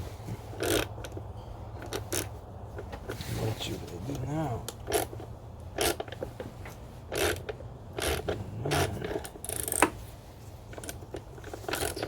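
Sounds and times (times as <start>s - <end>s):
ratchet wrench clicking: 0.6s - 0.9s, 7.1s - 9.9s, 10.7s - 12.0s.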